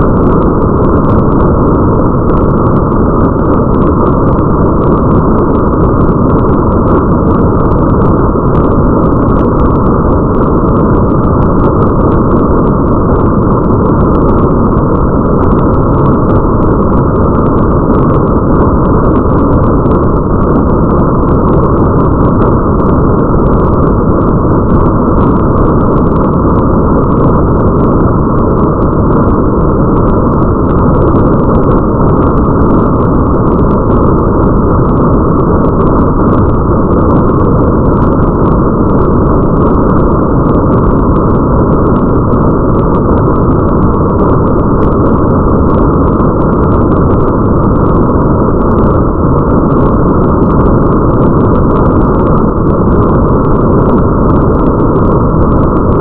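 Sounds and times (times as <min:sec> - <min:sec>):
muffled rain: 0:00.0 - 0:56.0.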